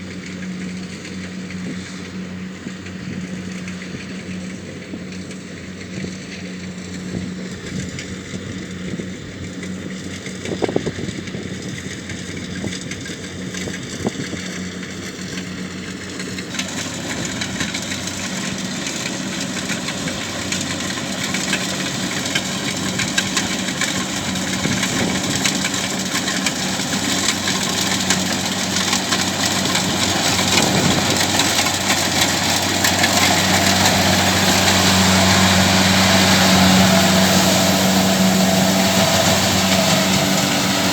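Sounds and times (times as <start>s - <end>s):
combine harvester diesel engine: 0.0s - 40.9s
noisy mechanical rush: 16.2s - 40.9s.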